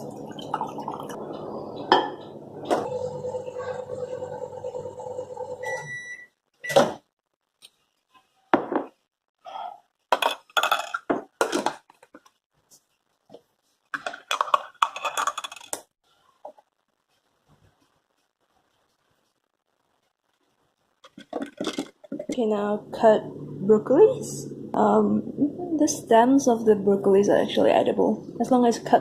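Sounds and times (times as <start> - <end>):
kitchen appliance humming: 0.0 - 6.1
dishes and cutlery clattering: 10.1 - 11.8, 14.0 - 15.8, 21.2 - 22.3.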